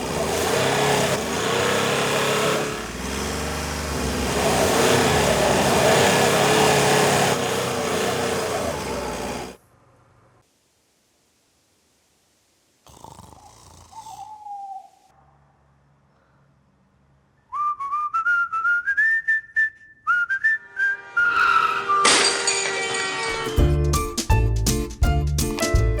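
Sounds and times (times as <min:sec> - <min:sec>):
whistle climbing in steps: 0:17.5 - 0:22.2
music: 0:20.6 - 0:26.0.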